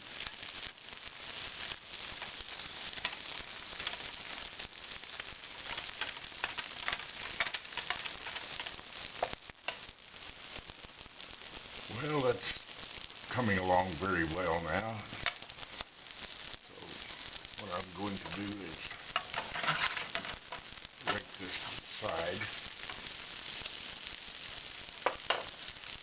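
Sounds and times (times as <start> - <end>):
food sizzling and crackling: 0.0 - 26.0
utensil scraping a pan: 18.2 - 21.8.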